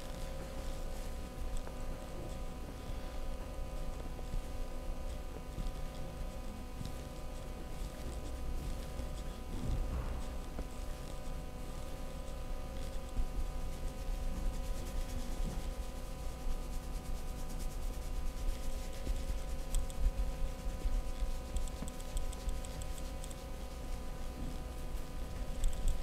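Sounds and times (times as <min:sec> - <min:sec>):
background hum: 0:00.0 - 0:26.0
hands rubbing skin: 0:00.2 - 0:26.0.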